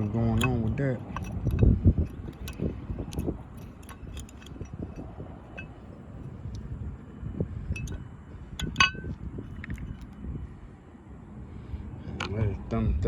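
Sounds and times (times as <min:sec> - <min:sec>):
ringing metallic clink: 0:00.0 - 0:06.7, 0:07.7 - 0:08.0, 0:08.6 - 0:10.1
metal tools clicking and clinking: 0:00.0 - 0:06.8, 0:07.8 - 0:08.0, 0:08.6 - 0:10.1.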